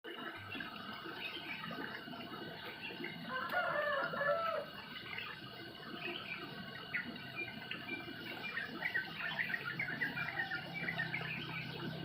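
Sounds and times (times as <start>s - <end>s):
small birds chirping: 0.4s - 12.0s
rooster crowing: 3.3s - 4.8s.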